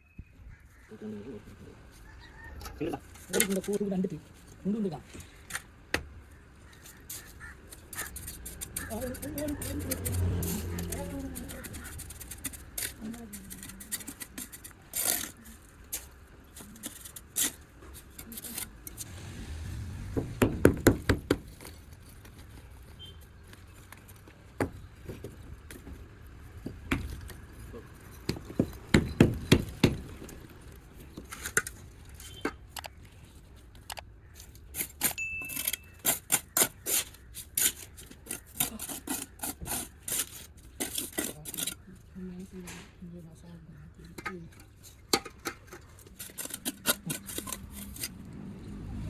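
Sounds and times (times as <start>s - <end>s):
hard knocks and clinks: 28.2s - 30.3s.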